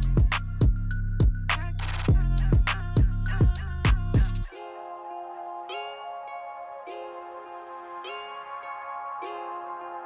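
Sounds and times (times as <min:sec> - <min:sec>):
music with deep bass beat: 0:00.0 - 0:04.5.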